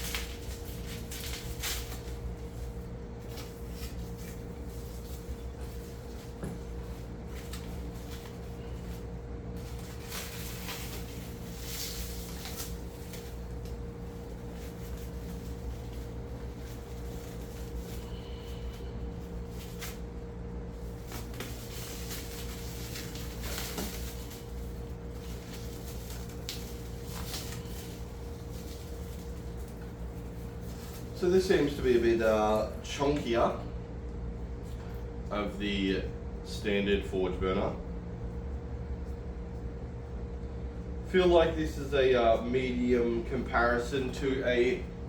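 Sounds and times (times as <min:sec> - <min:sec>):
packaging rustling: 0:00.0 - 0:31.8
steady low hum: 0:00.0 - 0:45.0.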